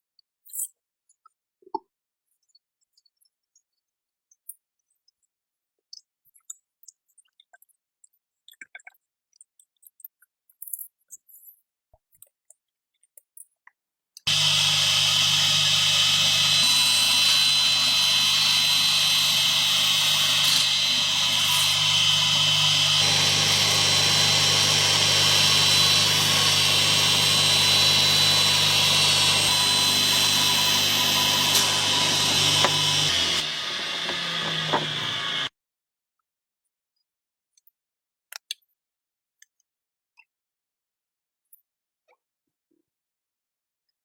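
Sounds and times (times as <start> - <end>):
power tool motor whining: 14.3 - 35.5.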